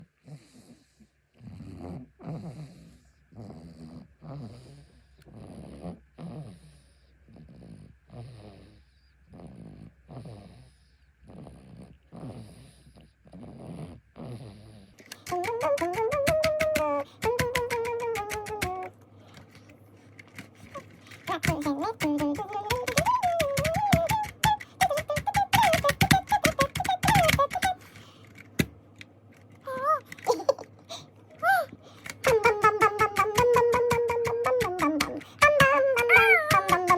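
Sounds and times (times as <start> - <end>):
baby snoring: 0.2 - 15.0
keyboard keys clacking: 20.2 - 27.8
baby babbling and squealing: 29.7 - 30.1, 35.1 - 36.9.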